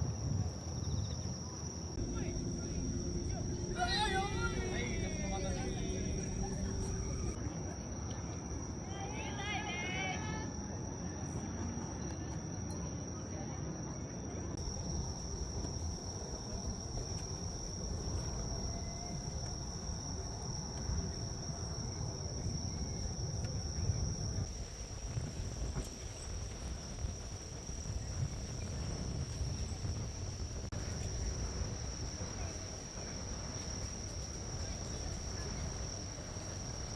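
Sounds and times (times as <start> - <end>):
crickets trilling: 0.0 - 36.9
low outdoor rumble: 1.9 - 8.0.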